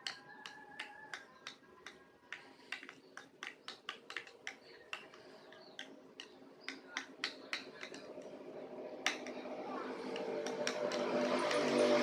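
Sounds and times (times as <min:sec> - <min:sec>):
stirrer clicking against cup: 0:00.0 - 0:08.4.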